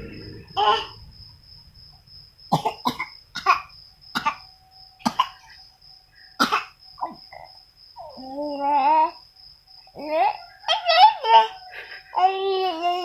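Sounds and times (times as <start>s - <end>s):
child fake coughing: 2.6s - 4.4s, 5.0s - 5.4s, 6.4s - 7.2s.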